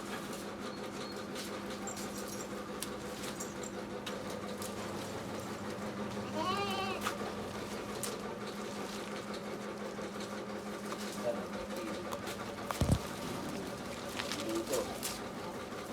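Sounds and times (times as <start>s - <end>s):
goat bleating: 6.2s - 7.2s
steady low hum: 11.4s - 15.9s.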